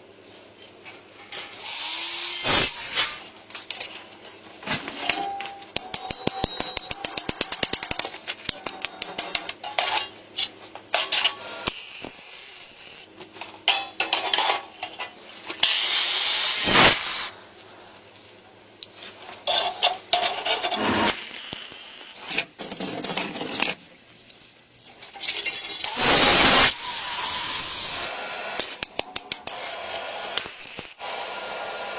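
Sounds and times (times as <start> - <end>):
bursts of hissing: 1.7 - 3.2, 15.6 - 17.3, 25.9 - 28.1
scraping and rubbing on metal: 19.0 - 21.2.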